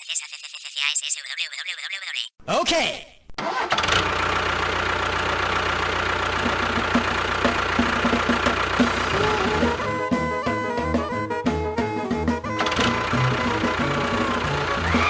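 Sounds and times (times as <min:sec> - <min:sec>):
engine idling with knock: 0:03.9 - 0:15.0.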